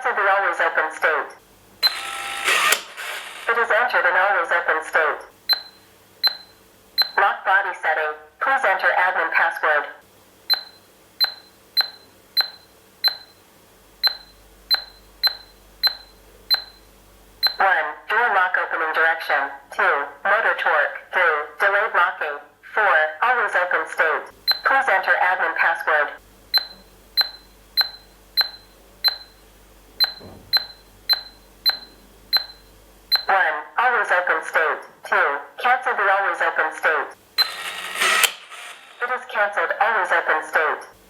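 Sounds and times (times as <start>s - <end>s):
keypad beeps: 1.8s - 3.4s, 5.5s - 7.2s, 10.5s - 13.4s, 14.0s - 16.8s, 24.5s - 24.7s, 26.5s - 29.4s, 30.0s - 33.3s, 37.4s - 38.8s.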